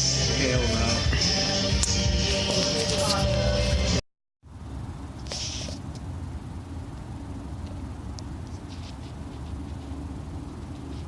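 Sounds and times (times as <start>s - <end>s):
music playing: 0.0s - 4.0s.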